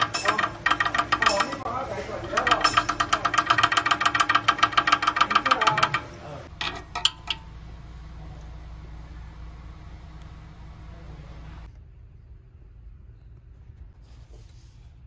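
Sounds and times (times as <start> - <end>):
exhaust valve flap rattling: 0.0 - 7.8
engine running: 0.0 - 11.8
low steady hum: 0.0 - 14.8.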